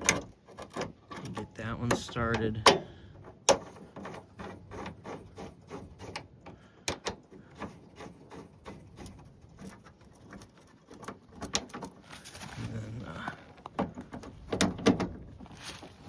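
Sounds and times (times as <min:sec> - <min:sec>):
small metal clicks: 0:00.0 - 0:05.0.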